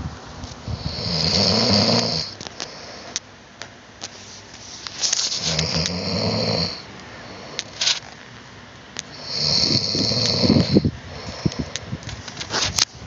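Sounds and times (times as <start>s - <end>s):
person snoring: 0.7s - 3.1s, 5.4s - 7.9s, 9.1s - 11.8s.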